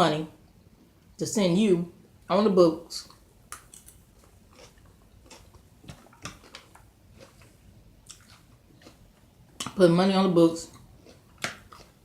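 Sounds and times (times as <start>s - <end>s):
faint chewing: 3.0s - 9.8s, 10.6s - 12.0s.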